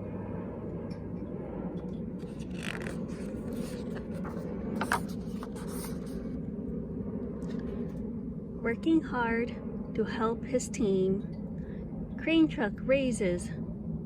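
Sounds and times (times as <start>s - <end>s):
low background hum: 0.0s - 14.0s
book pages turning: 2.2s - 6.4s.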